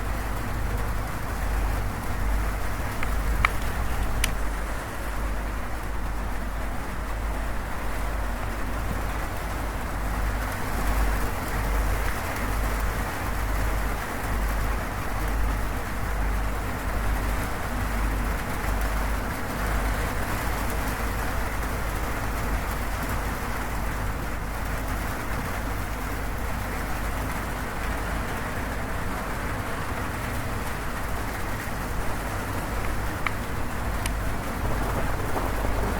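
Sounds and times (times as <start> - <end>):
rain on a metal roof: 0.0 - 35.9
deep low rumble: 34.4 - 35.9.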